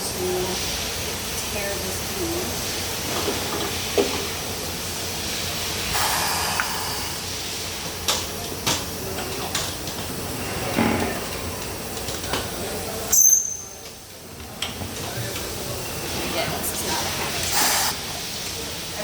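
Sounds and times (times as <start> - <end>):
tyre changing machine hissing: 2.5 - 11.9, 15.3 - 19.0
loud air hiss with whistle: 5.4 - 7.7, 17.5 - 18.0.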